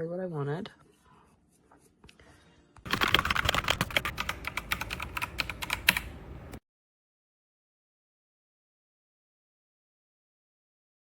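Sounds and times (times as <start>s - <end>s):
mechanical keyboard typing: 2.9s - 6.6s.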